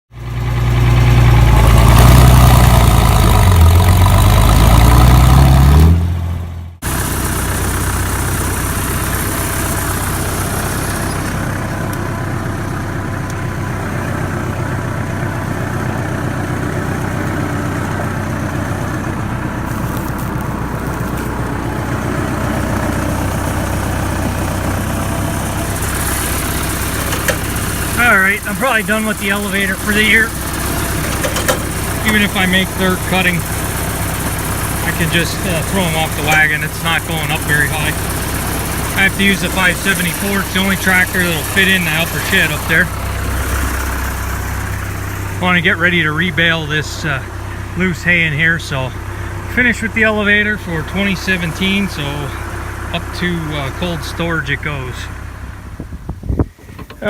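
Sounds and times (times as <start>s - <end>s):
tractor engine running: 0.1s - 57.0s.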